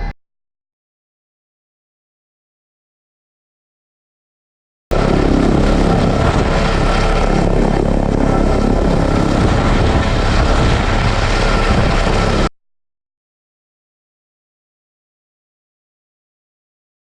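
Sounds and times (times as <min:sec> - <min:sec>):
helicopter engine and rotor: 0:04.9 - 0:12.5.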